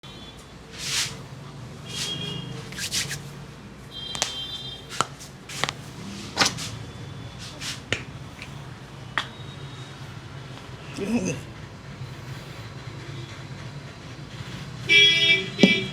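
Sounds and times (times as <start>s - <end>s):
soft swishing strokes: 0.7s - 1.3s, 1.9s - 3.4s, 4.2s - 6.8s, 7.4s - 8.0s
cracks from head massage: 1.9s - 3.2s, 4.1s - 6.8s.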